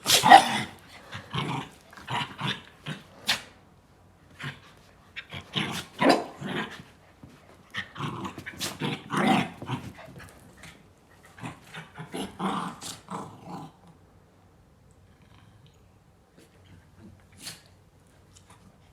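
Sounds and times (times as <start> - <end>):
dog growling: 7.8 - 10.0, 11.4 - 13.9.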